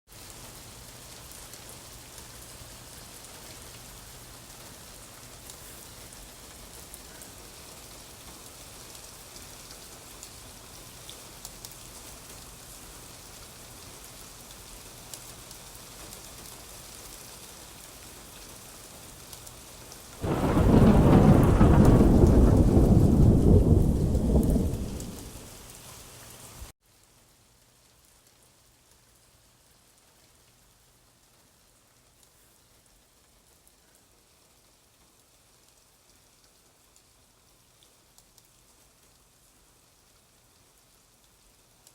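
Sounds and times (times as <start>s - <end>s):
steady rain: 0.1s - 41.9s
deep rumble of thunder: 20.2s - 25.6s.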